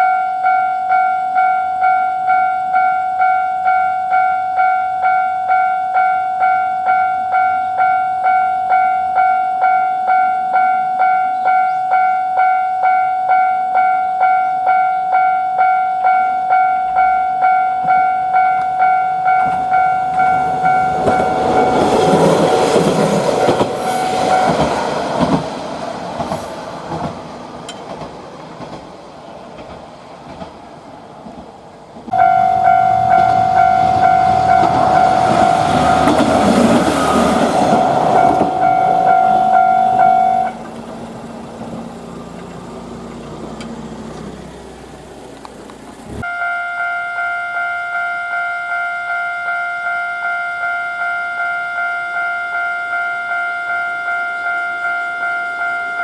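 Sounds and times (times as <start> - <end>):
level crossing warning bell: 0.0 - 25.2, 32.1 - 41.2, 46.2 - 56.0
train passing with rail clatter: 0.0 - 46.2.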